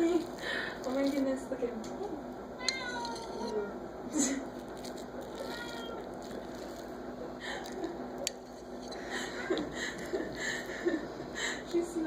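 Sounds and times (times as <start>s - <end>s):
cats chewing wet food: 0.0s - 1.4s, 4.4s - 8.2s, 9.0s - 12.0s.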